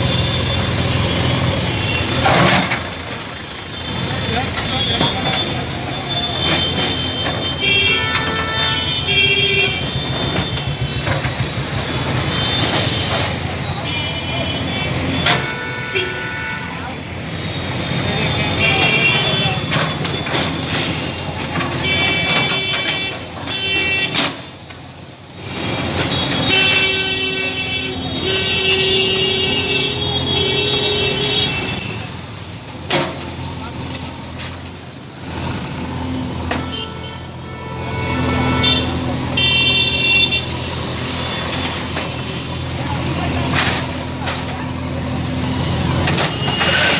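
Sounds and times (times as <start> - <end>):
street traffic engines: 0.0 - 46.9
vehicle horn: 4.8 - 10.9, 12.3 - 17.0, 21.7 - 24.3, 26.0 - 32.0, 36.5 - 41.6, 46.1 - 46.9.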